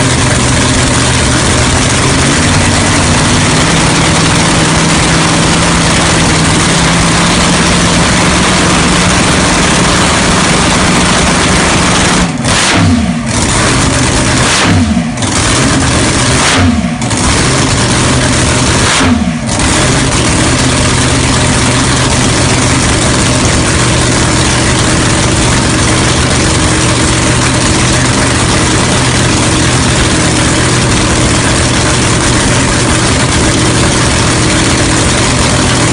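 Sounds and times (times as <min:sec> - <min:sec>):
dragster engine running loud: 0:00.0 - 0:35.9
engine throttle blips: 0:00.0 - 0:35.9.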